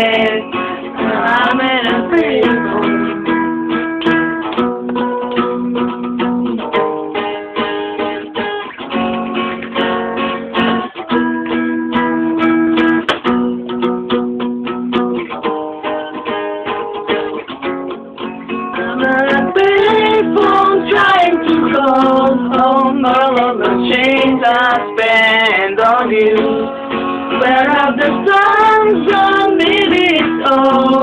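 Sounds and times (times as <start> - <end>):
acoustic guitar strumming chords: 0.0 - 31.0.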